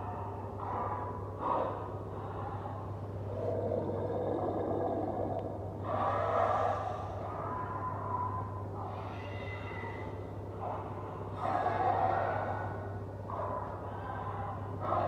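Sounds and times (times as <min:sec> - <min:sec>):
steady low hum: 0:00.0 - 0:09.2
breathy rasping monster vocals: 0:03.3 - 0:05.8.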